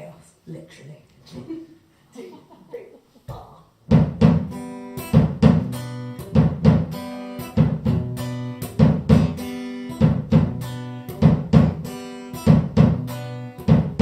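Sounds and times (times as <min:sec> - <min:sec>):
drum beat: 0:03.3 - 0:14.0
strummed acoustic guitar: 0:03.9 - 0:14.0.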